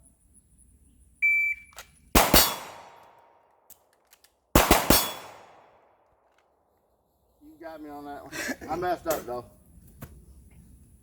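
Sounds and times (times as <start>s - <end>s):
shot timer beeps: 1.2s - 1.8s
pistol shots on steel targets: 2.1s - 3.4s, 4.5s - 5.9s.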